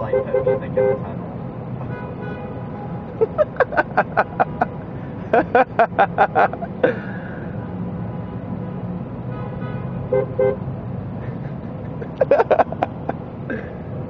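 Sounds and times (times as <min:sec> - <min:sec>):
car horns tooting: 0:00.0 - 0:01.2, 0:01.8 - 0:03.3, 0:09.3 - 0:10.6
idling traffic hum: 0:00.0 - 0:14.0.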